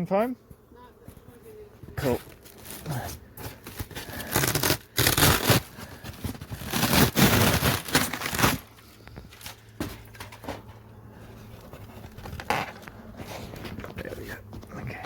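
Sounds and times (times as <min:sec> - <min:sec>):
foam crackling and tearing: 0:01.9 - 0:09.7.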